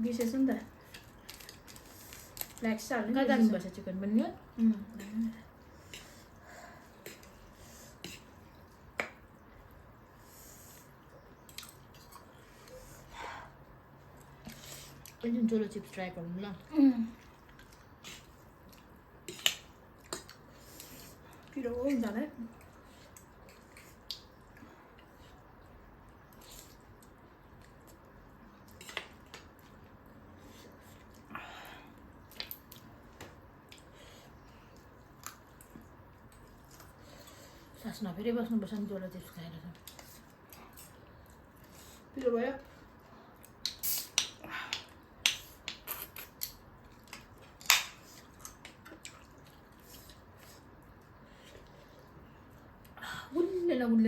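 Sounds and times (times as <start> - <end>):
crunchy food being chewed: 45.7 - 53.0.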